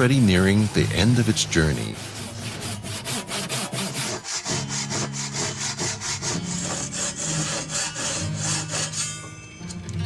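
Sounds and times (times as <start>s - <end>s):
hand saw cutting wood: 0.0s - 9.3s.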